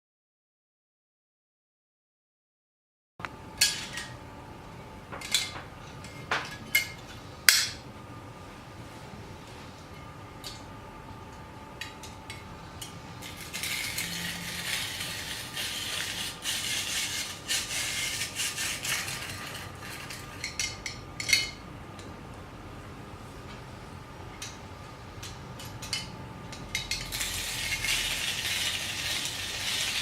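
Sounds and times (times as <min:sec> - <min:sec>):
cheese grater drum scraping: 0:13.2 - 0:20.5, 0:27.0 - 0:30.0.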